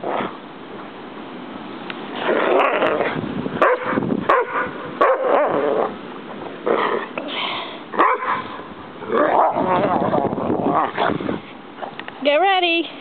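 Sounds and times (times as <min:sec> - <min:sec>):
dog barking: 0:03.6 - 0:05.3, 0:08.0 - 0:08.4.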